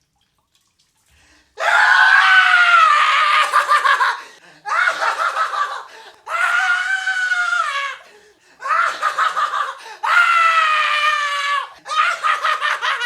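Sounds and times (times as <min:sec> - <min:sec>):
person screaming in high wails: 0:06.3 - 0:08.0.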